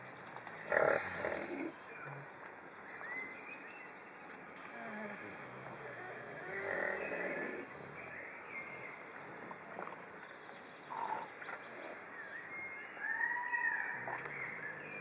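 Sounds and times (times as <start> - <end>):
pigs snoring: 0.6 - 1.8, 4.7 - 8.0.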